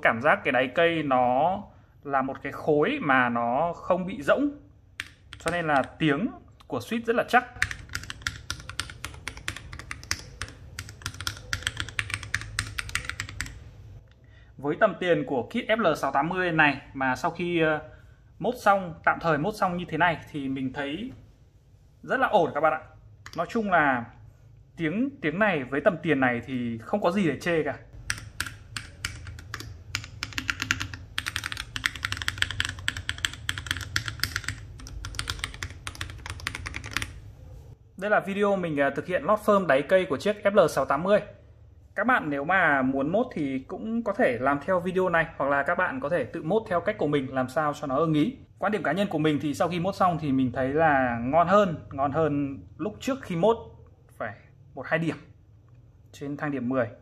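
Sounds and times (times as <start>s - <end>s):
mechanical keyboard typing: 5.0s - 6.0s, 7.6s - 13.6s, 28.0s - 37.2s.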